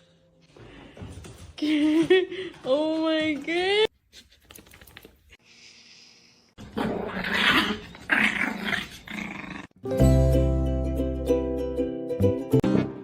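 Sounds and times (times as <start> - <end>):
animal growling: 6.8 - 9.7
music: 9.8 - 13.0.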